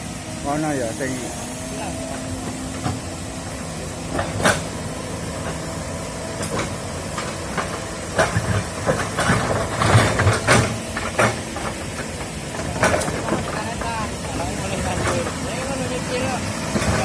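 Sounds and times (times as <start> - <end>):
excavator engine running: 0.0 - 17.0
metal clanking and scraping: 4.0 - 4.8, 6.4 - 17.0.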